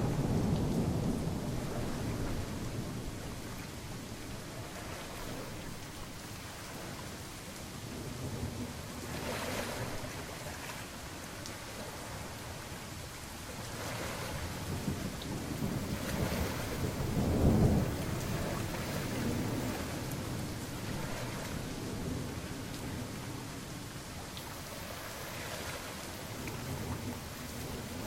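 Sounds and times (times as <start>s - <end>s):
rolling thunder: 0.0s - 5.6s, 13.5s - 24.0s
steady rain: 0.0s - 28.0s.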